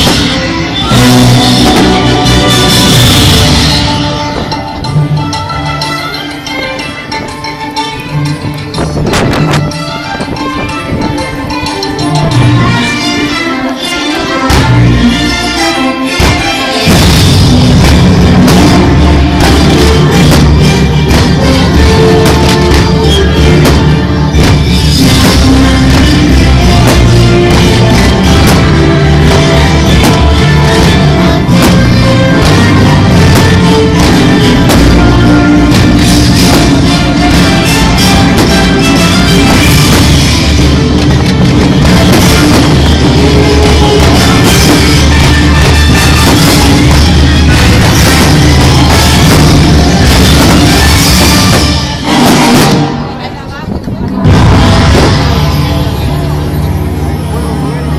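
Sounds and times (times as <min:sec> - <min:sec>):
music with sustained notes: 0:00.0 - 0:57.9
regular drum beat: 0:16.2 - 0:53.0.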